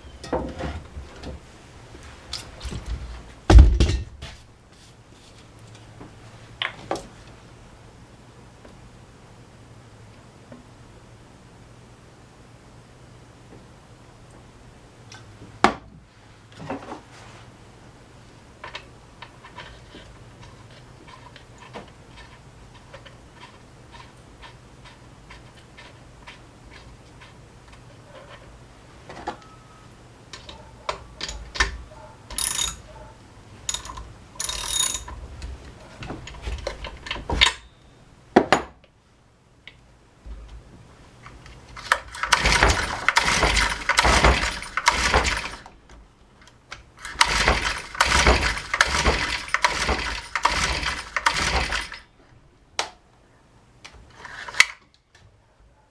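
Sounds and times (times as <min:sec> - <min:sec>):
hand tools and metal parts clinking: 0:18.6 - 0:28.5, 0:29.1 - 0:37.9, 0:41.2 - 0:45.7.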